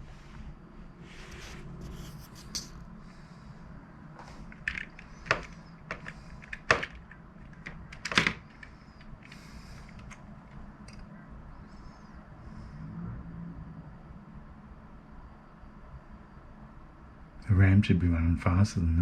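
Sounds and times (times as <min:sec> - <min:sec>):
low steady hum: 0:00.0 - 0:19.0
sharp clicks and knocks: 0:04.5 - 0:11.1.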